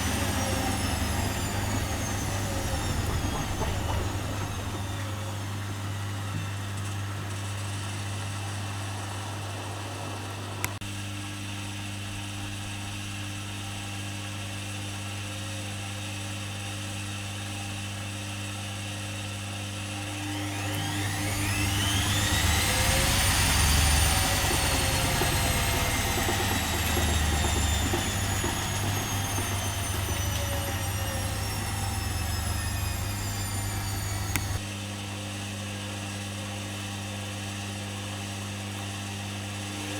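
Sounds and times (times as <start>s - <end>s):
drum motor whine: 0.0s - 10.8s, 20.0s - 34.7s
washing machine humming: 0.0s - 10.8s, 20.0s - 34.7s.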